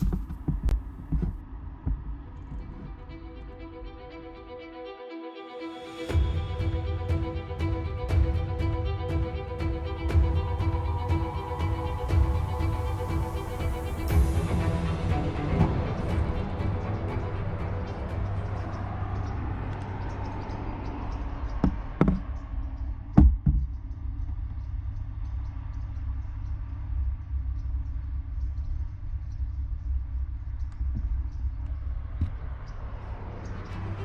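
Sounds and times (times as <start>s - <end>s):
low rumble: 6.0s - 34.0s
sharp knocks: 23.2s - 23.8s.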